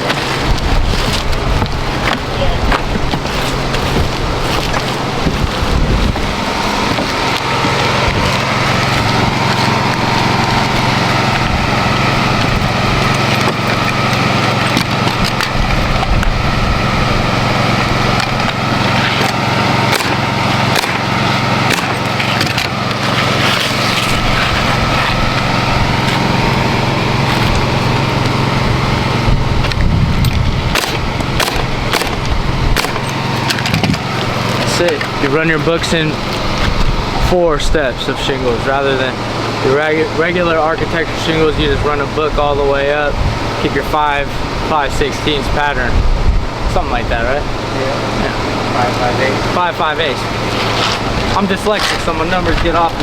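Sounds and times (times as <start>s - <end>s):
motor humming: 0.0s - 53.0s
nailer firing nails: 17.8s - 25.4s, 30.7s - 35.1s.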